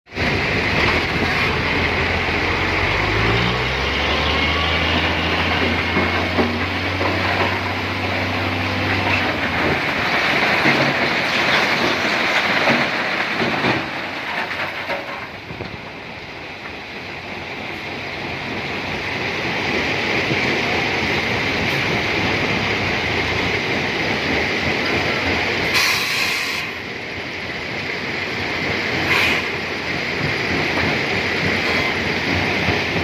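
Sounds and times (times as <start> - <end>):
diesel engine hum: 0.1 - 25.8
stone and machinery rattling: 5.6 - 15.4.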